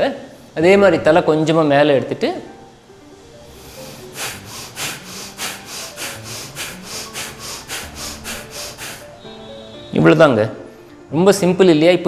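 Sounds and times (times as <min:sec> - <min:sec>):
forceful nose breathing: 0:03.4 - 0:09.8.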